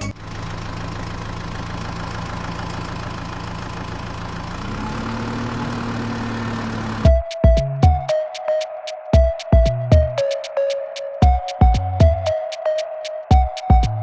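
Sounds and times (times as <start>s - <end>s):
diesel engine idling: 0.0s - 7.1s.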